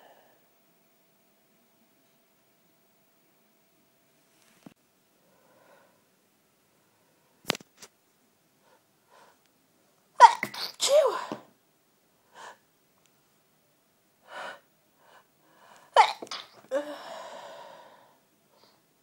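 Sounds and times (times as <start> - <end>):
long breathy sound: 5.2 - 6.1, 14.2 - 16.0, 16.7 - 18.8
person sneezing: 10.2 - 11.5, 16.0 - 17.1
short breaths: 16.7 - 18.8.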